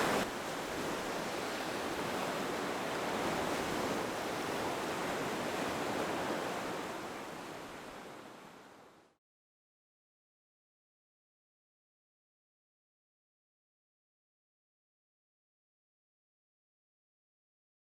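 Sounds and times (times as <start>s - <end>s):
steady rushing noise: 0.0s - 0.3s.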